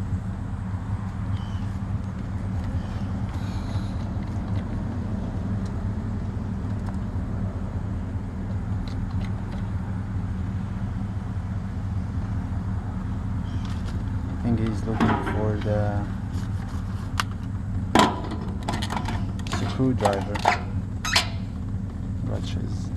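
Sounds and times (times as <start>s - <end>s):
diesel engine idling: 0.0s - 22.9s.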